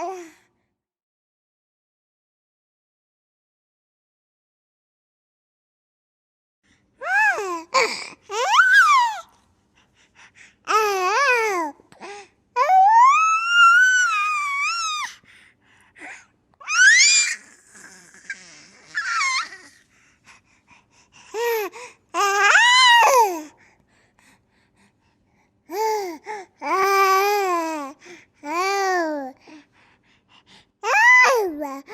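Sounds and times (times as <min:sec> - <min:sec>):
baby laughing and squealing: 0:08.3 - 0:09.2, 0:16.6 - 0:19.8.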